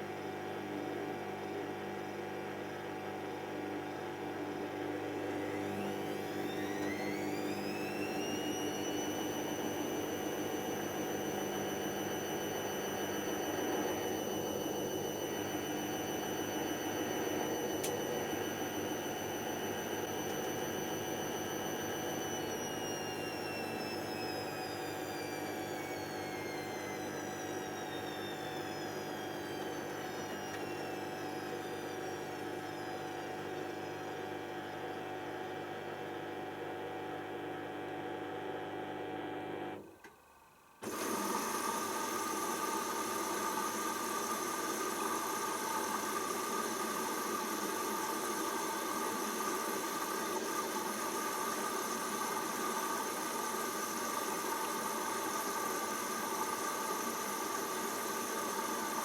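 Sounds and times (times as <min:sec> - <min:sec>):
washing machine motor hum and whine: 0:00.0 - 0:59.0.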